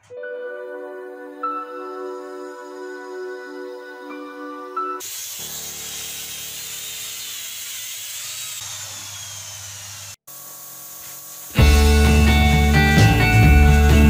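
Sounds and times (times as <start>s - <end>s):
power tool cutting wood: 5.0s - 12.4s.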